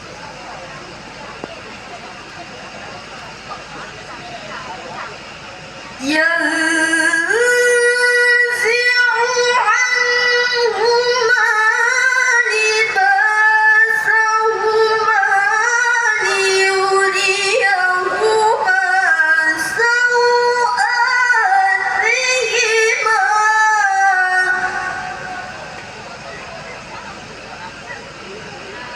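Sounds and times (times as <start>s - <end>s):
woman reciting melodically: 5.9s - 25.7s.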